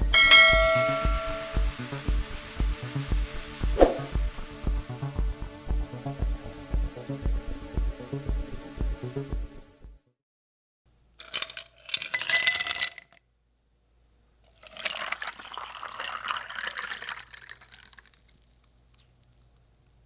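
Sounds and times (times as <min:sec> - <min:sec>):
glass clinking: 0:00.1 - 0:01.6, 0:11.2 - 0:13.2, 0:14.6 - 0:18.0
liquid pouring: 0:14.5 - 0:20.0.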